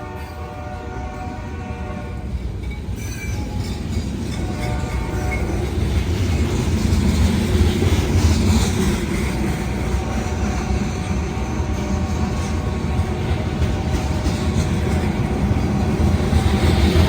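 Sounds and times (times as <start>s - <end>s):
faint train horn: 0.0s - 2.5s, 3.2s - 6.3s, 9.6s - 16.0s
diesel locomotive rumble: 0.0s - 17.0s.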